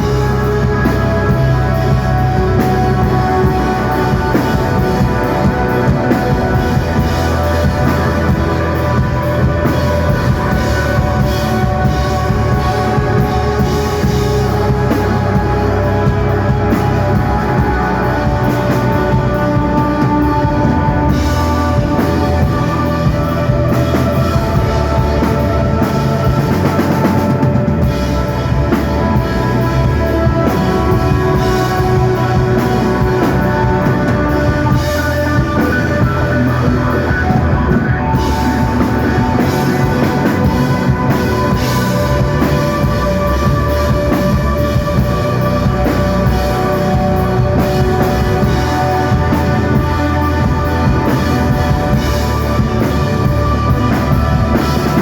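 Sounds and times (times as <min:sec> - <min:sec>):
bass guitar: 0:00.0 - 0:55.0
drum kit: 0:00.0 - 0:55.0
sustained guitar lines: 0:00.0 - 0:55.0.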